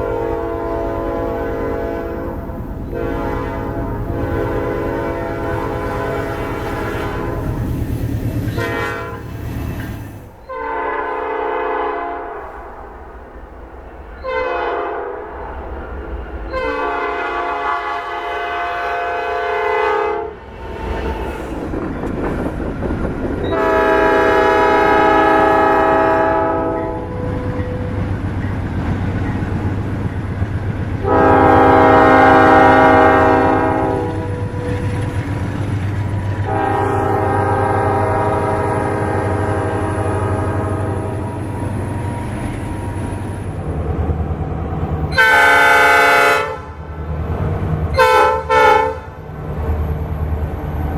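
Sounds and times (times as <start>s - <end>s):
locomotive air horn blasts: 0.0s - 7.6s, 8.5s - 9.4s, 10.4s - 12.9s, 14.2s - 15.4s, 16.5s - 21.8s, 23.4s - 27.9s, 31.0s - 34.9s, 36.4s - 41.4s, 45.1s - 46.8s, 47.9s - 49.2s
train running noise: 0.0s - 50.9s.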